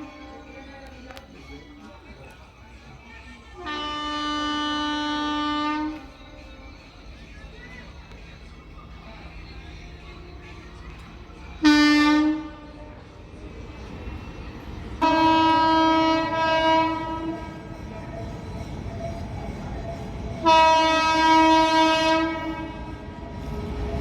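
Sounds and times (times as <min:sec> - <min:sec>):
train rumble: 0:00.0 - 0:24.0
train horn blasts: 0:03.6 - 0:06.8, 0:11.5 - 0:13.2, 0:15.0 - 0:24.0.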